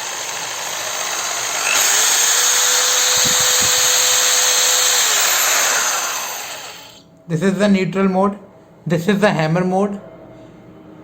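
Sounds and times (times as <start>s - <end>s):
hammer drill running: 0.0s - 7.0s.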